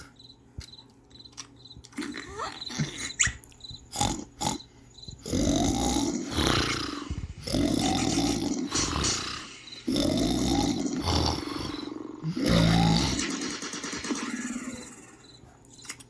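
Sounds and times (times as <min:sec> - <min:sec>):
person snoring: 0:03.9 - 0:15.0.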